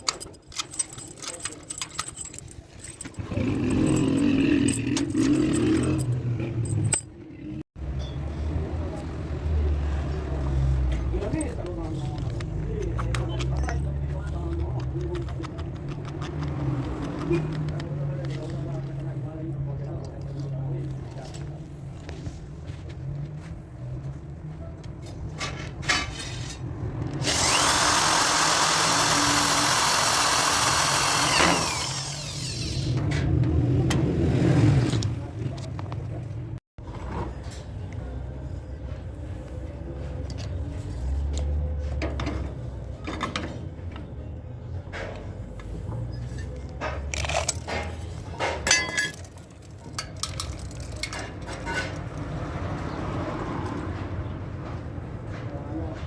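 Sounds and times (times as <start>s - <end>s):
metal clinks and knocks: 0.0s - 7.3s, 46.5s - 52.3s
electric power tool whining: 27.2s - 32.9s.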